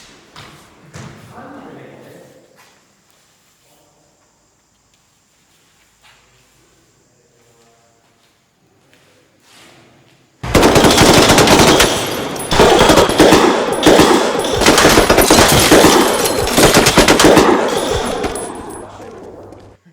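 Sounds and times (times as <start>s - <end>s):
automatic gunfire bursts: 10.4s - 19.8s.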